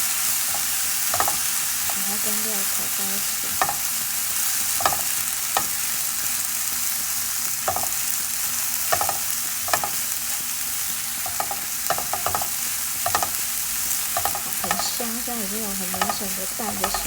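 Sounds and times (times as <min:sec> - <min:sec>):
rice sizzling in a pan: 0:00.0 - 0:17.0
spatula scraping a pan: 0:11.0 - 0:15.1, 0:15.8 - 0:17.0.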